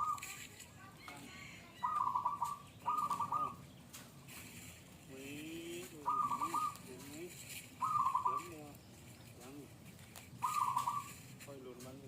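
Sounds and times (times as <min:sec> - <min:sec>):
low gliding bird call: 0:00.0 - 0:00.4, 0:01.6 - 0:03.7, 0:06.0 - 0:07.0, 0:07.8 - 0:08.8, 0:10.4 - 0:11.3
dove cooing: 0:00.0 - 0:00.5, 0:01.5 - 0:03.8, 0:05.4 - 0:09.7, 0:10.3 - 0:11.4.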